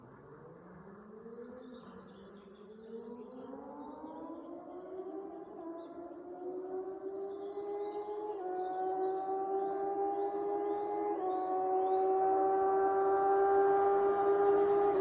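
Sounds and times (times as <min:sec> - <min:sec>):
motorcycle engine revving: 0:05.1 - 0:15.0.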